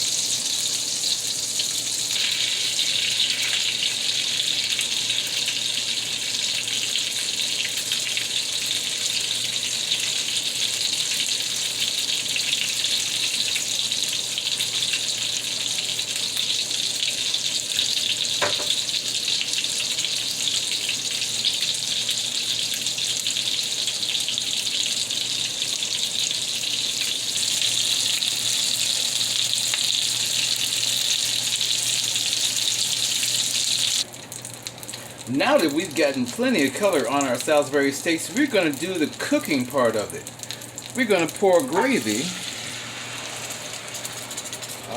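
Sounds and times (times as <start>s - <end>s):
meat sizzling in a pan: 0.0s - 35.2s, 35.8s - 44.9s.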